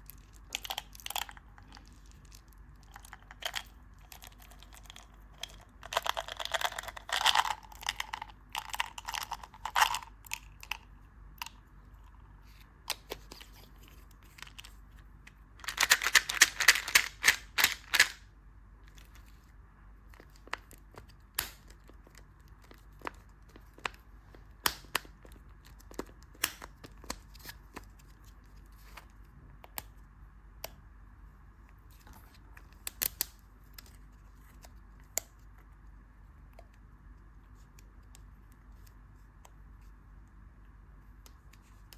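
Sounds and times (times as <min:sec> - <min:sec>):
candy wrapper crinkling and tearing: 0:00.0 - 0:10.8, 0:15.6 - 0:18.2.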